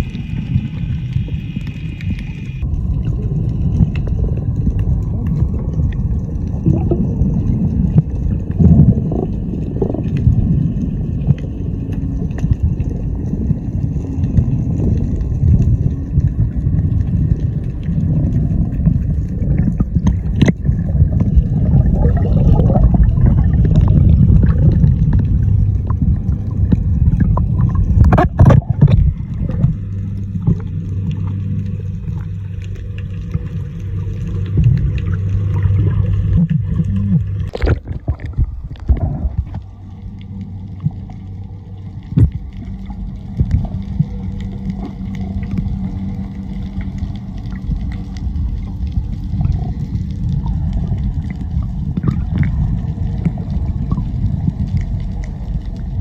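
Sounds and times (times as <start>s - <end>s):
wind noise: 0.0s - 30.7s
boat engine rumble: 0.0s - 56.0s
steady low hum: 0.0s - 56.0s
water noise: 0.0s - 56.0s.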